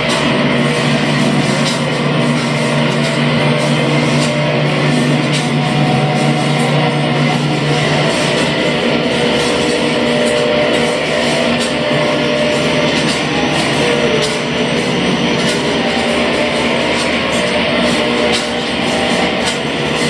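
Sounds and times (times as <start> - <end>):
distorted noise music: 0.0 - 20.0
sustained droning tones: 0.0 - 20.0.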